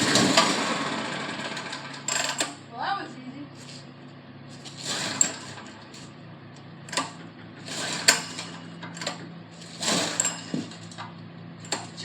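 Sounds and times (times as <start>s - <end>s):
hands working on generator parts: 3.6s - 12.0s.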